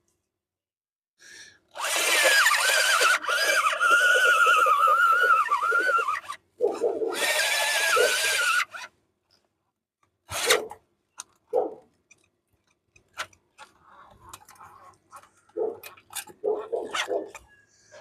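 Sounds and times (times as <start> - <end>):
electric drill cutting steel: 1.8 - 8.9, 10.3 - 10.7.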